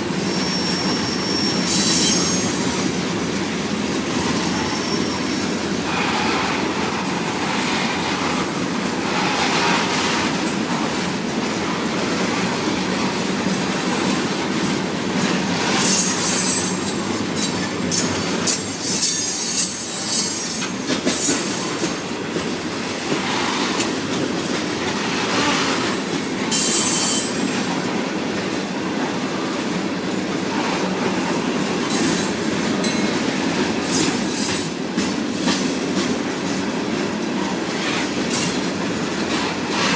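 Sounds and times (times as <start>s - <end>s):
freight train wheels rumbling: 0.0s - 39.9s
shrill wheel squeals: 0.2s - 3.0s, 4.1s - 6.4s, 15.7s - 21.8s.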